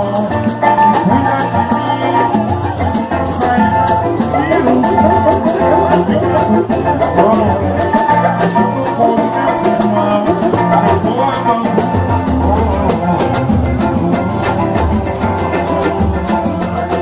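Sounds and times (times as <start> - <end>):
drums and percussion beat: 0.0 - 17.0
plucked strings: 4.4 - 17.0.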